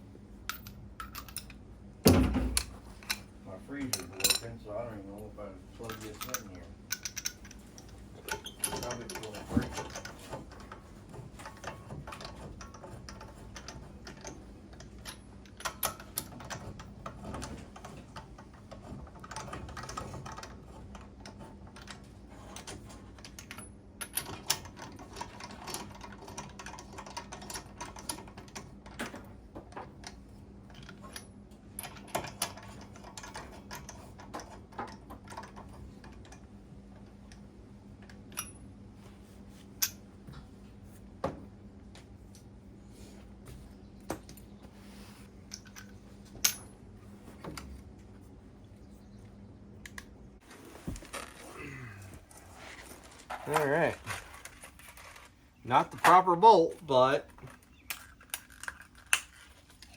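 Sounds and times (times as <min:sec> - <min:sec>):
metal tools clicking and clinking: 0:00.5 - 0:01.6, 0:02.5 - 0:04.6, 0:05.2 - 0:10.2
steady low hum: 0:25.9 - 0:59.9.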